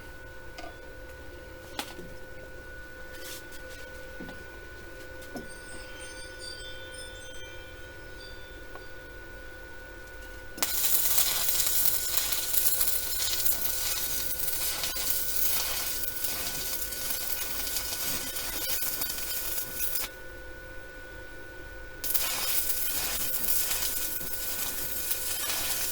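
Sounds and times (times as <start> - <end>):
cooling fan whine: 0.0 - 25.9
welding arc crackling hiss: 10.6 - 20.2, 22.0 - 25.9.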